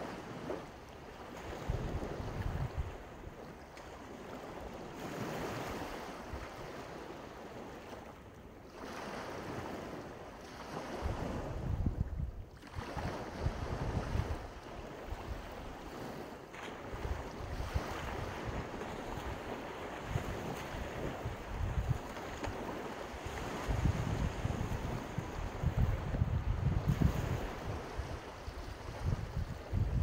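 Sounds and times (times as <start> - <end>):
wind buffeting microphone: 1.5 - 3.4, 10.9 - 16.2, 16.8 - 30.0
surf breaking on a beach: 8.8 - 30.0.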